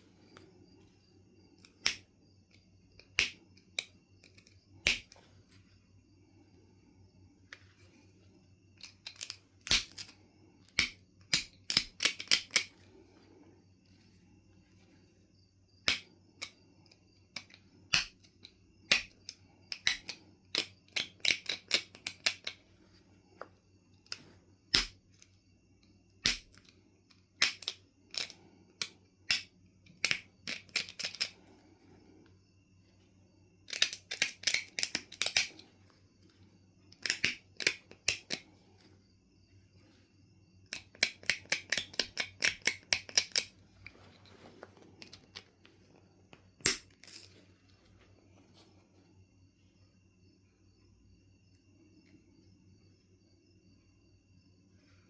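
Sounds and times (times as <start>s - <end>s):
stone clicks and snaps: 1.6s - 5.2s, 8.8s - 12.8s, 15.8s - 16.6s, 17.3s - 22.6s, 24.0s - 25.3s, 26.2s - 31.4s, 33.7s - 35.6s, 36.2s - 38.5s, 40.7s - 47.4s.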